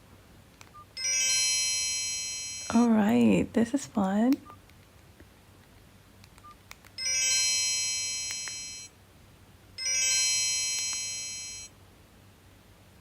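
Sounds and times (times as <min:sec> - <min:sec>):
phone speaker electronic chime: 0:01.0 - 0:02.8, 0:07.0 - 0:08.9, 0:09.8 - 0:11.7.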